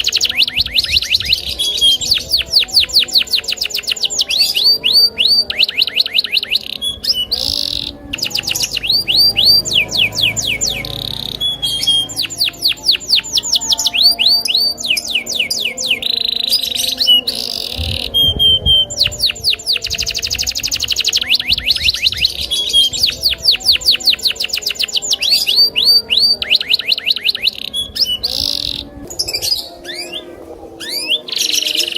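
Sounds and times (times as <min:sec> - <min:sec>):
canary singing trills: 0:00.0 - 0:31.9.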